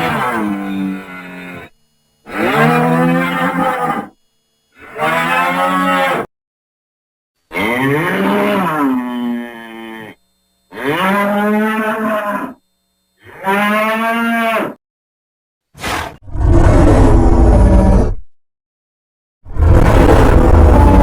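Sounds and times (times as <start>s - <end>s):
cow mooing: 0.0s - 4.2s, 4.8s - 6.3s, 7.5s - 12.6s, 13.2s - 14.8s.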